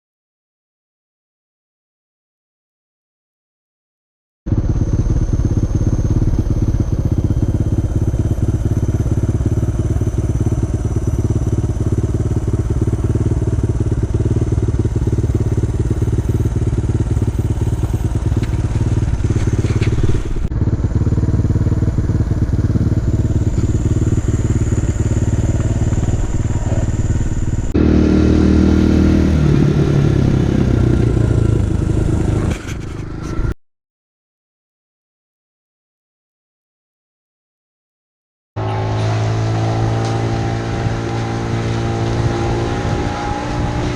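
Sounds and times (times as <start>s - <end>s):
dirt bike engine running: 4.5s - 33.5s, 38.6s - 43.9s.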